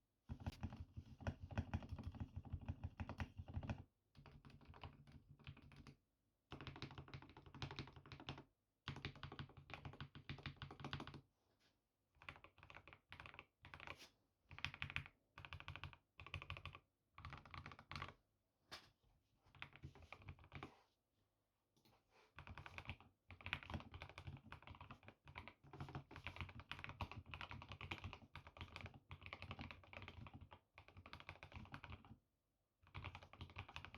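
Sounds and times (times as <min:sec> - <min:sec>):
mechanical keyboard typing: 0:06.5 - 0:11.2, 0:12.2 - 0:13.9, 0:14.5 - 0:18.1, 0:22.4 - 0:32.1, 0:32.9 - 0:33.9.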